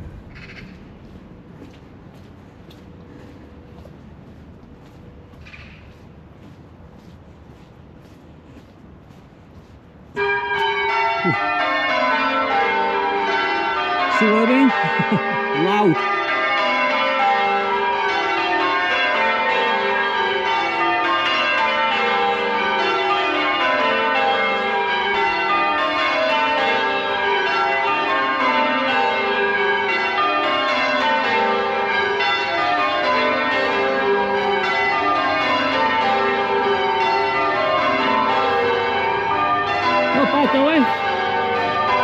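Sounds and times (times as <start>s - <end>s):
church bells change ringing: 10.1s - 42.0s.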